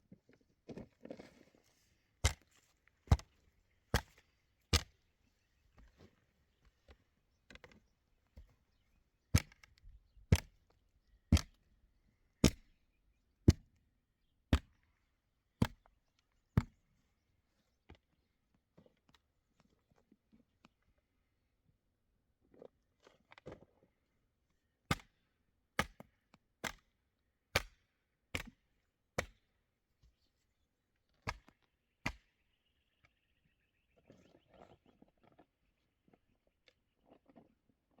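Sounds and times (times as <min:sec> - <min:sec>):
sharp chopping strikes: 0:03.1 - 0:03.3.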